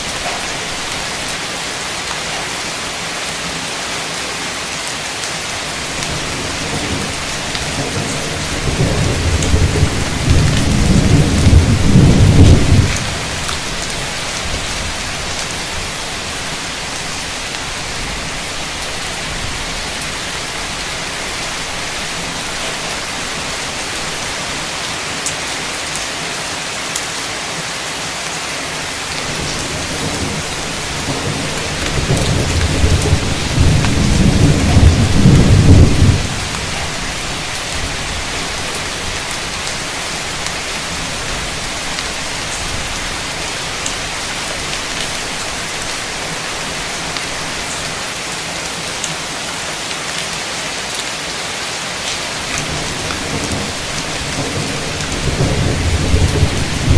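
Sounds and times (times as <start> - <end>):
heavy rain: 0.0 - 56.9
thunder rumbling: 5.8 - 15.5, 29.2 - 39.9, 52.4 - 56.9.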